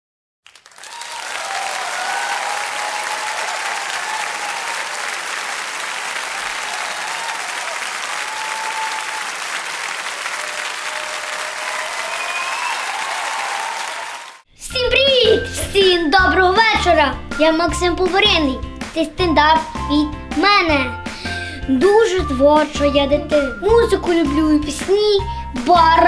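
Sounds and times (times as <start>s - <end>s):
crowd applauding: 0.5s - 14.4s.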